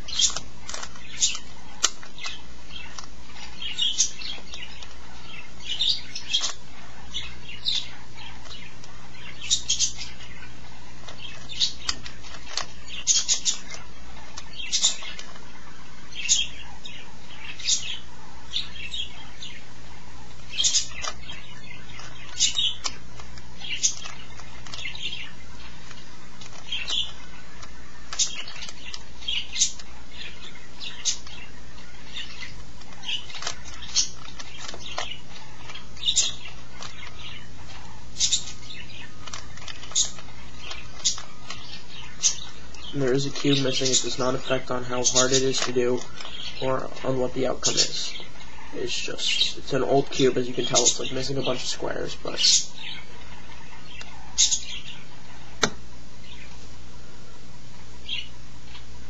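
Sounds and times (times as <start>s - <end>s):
faint low hum: 0.0s - 59.0s.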